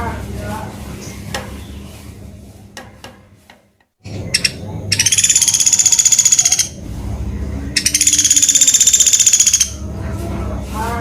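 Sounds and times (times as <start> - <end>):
woodpecker rattling trill: 4.2 - 6.8, 7.8 - 9.8.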